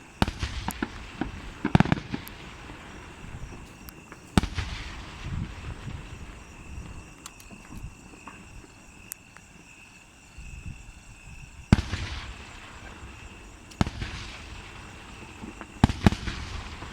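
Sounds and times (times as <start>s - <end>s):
firework shells bursting: 0.0s - 8.7s
rumbling crackle: 0.0s - 8.8s.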